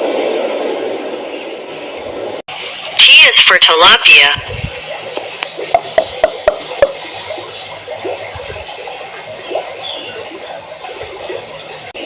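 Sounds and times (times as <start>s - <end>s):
water bubbling and gurgling: 2.5s - 12.0s.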